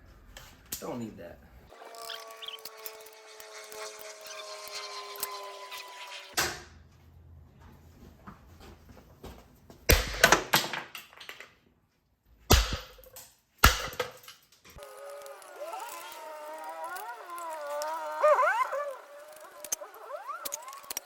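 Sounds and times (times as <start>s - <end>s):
knocks and clatters of tools: 8.6s - 11.7s, 12.5s - 14.8s.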